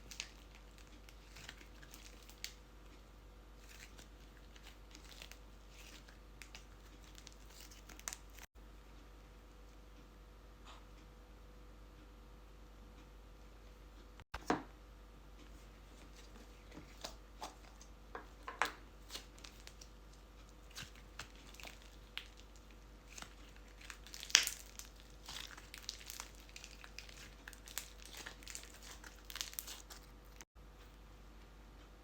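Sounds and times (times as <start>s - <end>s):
crinkly material crackling: 0.0s - 3.0s, 3.6s - 8.5s, 19.0s - 30.5s.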